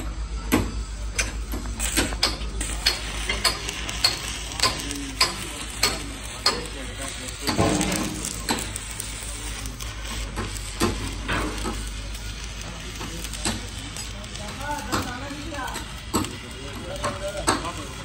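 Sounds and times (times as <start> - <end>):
crackling hiss: 1.2 - 18.0
sharp metal strikes: 7.5 - 8.6.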